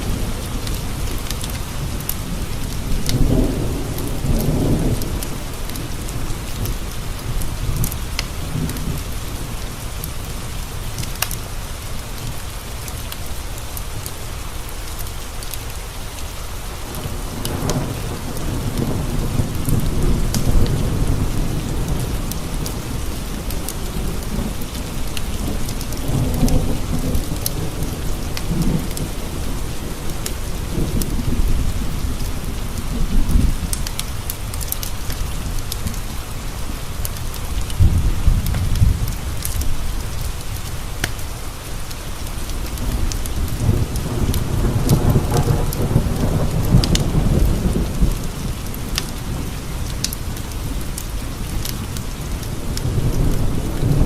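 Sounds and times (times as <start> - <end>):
thunder rumbling: 0.0 - 12.8, 16.8 - 54.0
heavy rain: 0.0 - 54.0
wood fire crackling: 19.5 - 45.0.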